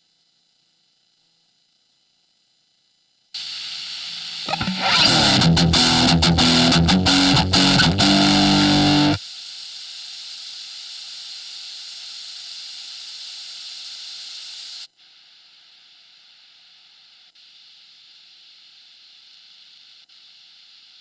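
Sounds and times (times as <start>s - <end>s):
amplifier hiss: 3.4s - 14.9s.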